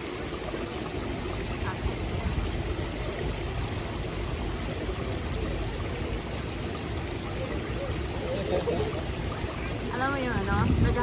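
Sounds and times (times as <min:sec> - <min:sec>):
faint voices: 0:05.3 - 0:11.0.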